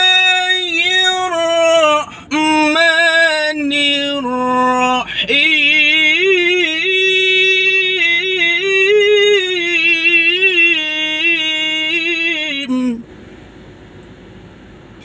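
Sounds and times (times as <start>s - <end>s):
man reciting melodically: 0.0s - 13.0s.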